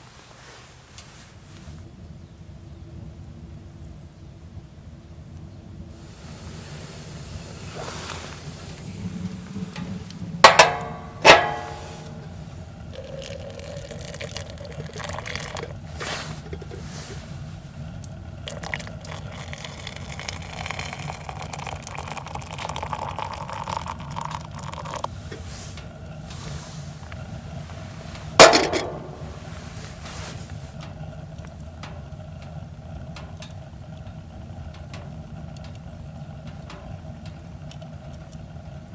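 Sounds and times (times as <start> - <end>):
steady low hum: 4.7 - 38.9
sharp ringing metal clanks: 10.5 - 12.2, 28.4 - 29.4.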